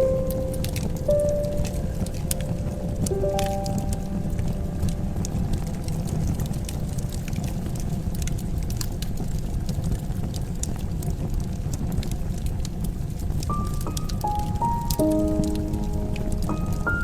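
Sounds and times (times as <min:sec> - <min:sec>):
wood fire crackling: 0:00.0 - 0:17.0.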